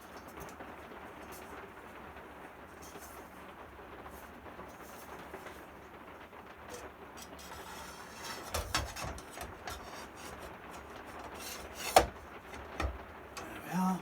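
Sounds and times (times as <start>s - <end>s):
saw blade parts scraping: 6.7s - 13.0s
knocks: 6.7s - 13.2s.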